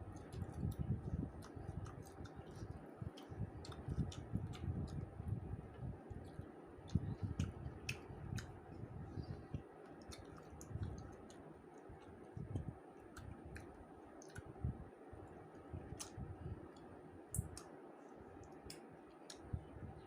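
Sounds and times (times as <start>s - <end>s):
person chewing food: 0.0s - 5.2s, 6.2s - 14.6s, 15.6s - 17.7s
wet mouth clicks: 0.2s - 5.0s, 6.3s - 8.6s, 9.2s - 14.5s, 17.3s - 17.7s.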